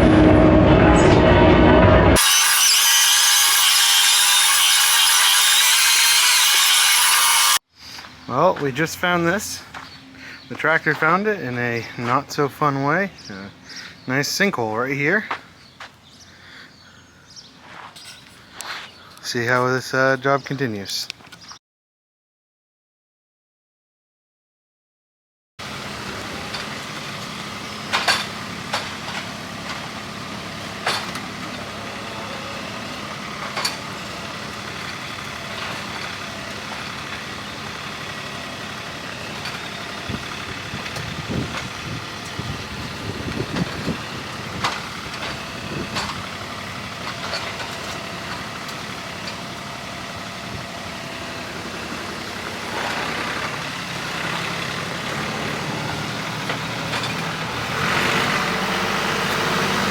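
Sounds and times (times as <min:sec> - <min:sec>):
sharp metallic clanks: 0:17.9 - 0:18.4
tractor diesel engine running: 0:25.6 - 0:59.9.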